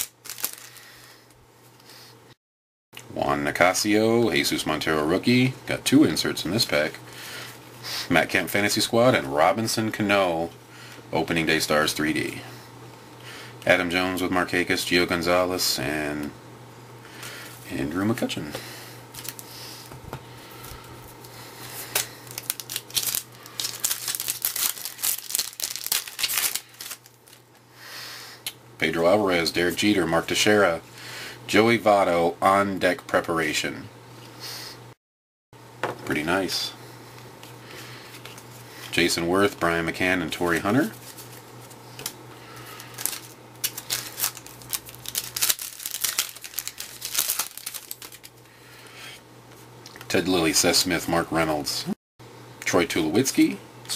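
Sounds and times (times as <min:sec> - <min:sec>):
cards being handled: 0:00.0 - 0:00.7, 0:18.5 - 0:27.4, 0:40.4 - 0:48.4
plastic wrapper tearing and crinkling: 0:00.0 - 0:00.8, 0:19.1 - 0:19.5, 0:21.8 - 0:27.6, 0:42.7 - 0:48.4.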